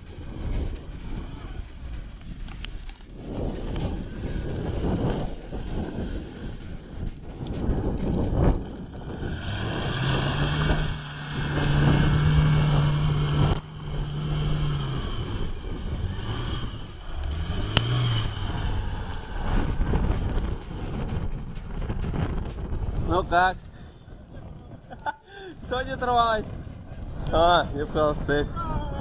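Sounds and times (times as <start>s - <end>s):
car engine revving: 3.2s - 23.4s.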